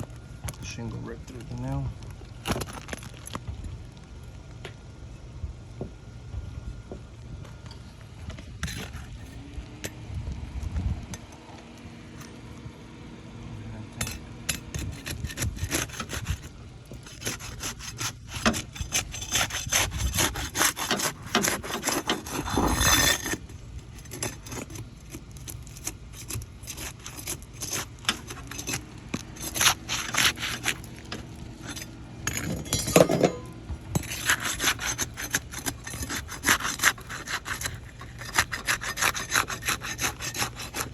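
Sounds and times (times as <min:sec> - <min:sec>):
flat bar scraping shingles: 0:08.6 - 0:09.4, 0:14.0 - 0:40.9.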